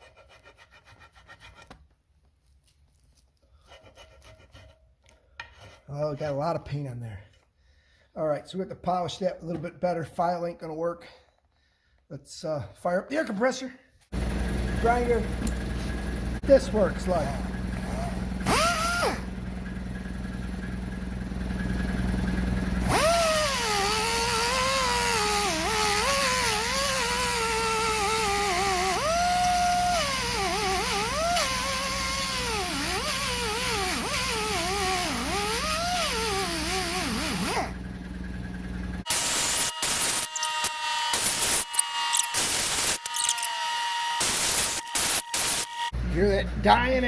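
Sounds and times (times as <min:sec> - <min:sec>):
air compressor humming: 0:14.1 - 0:47.0
air grinder whining: 0:14.1 - 0:47.0.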